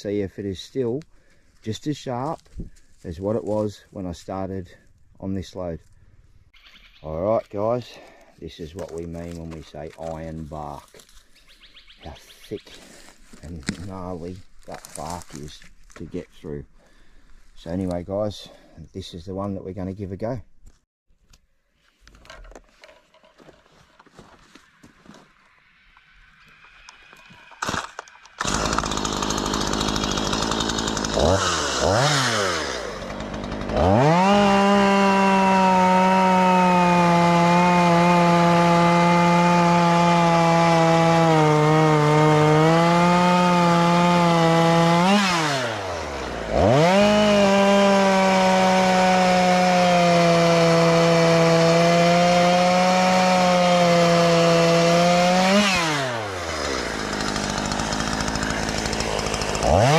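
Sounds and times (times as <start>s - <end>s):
chainsaw cutting wood: 12.8s - 16.1s, 23.3s - 59.9s.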